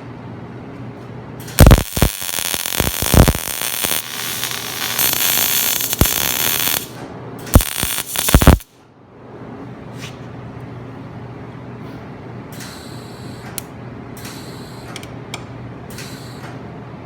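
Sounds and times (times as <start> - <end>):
welding arc crackling: 1.5 - 8.7.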